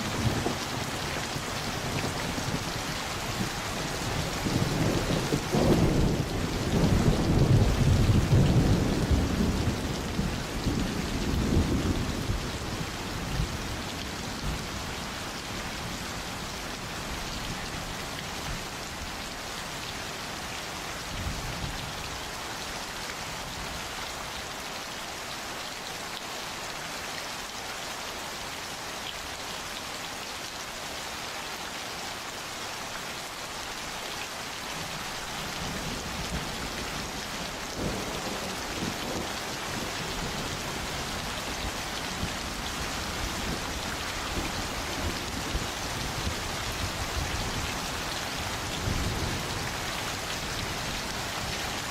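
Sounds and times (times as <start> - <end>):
low rumble of thunder: 0.0 - 14.8, 35.5 - 51.5
steady rain falling: 0.0 - 51.9.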